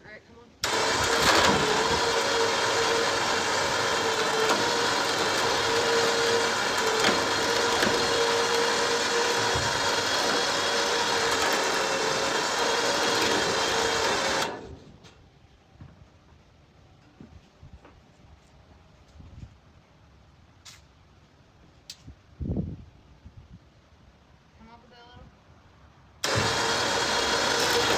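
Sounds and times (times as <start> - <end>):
motor whining: 0.6 - 15.0, 26.2 - 27.9.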